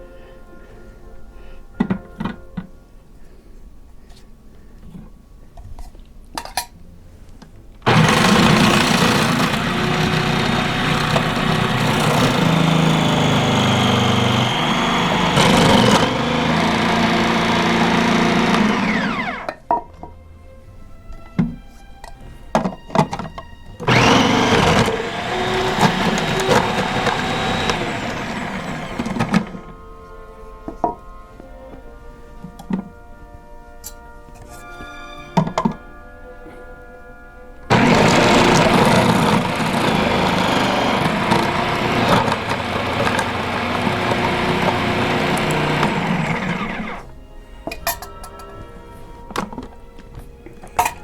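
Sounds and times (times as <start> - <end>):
food processor chopping: 7.9 - 19.6, 23.8 - 29.8, 37.7 - 47.1.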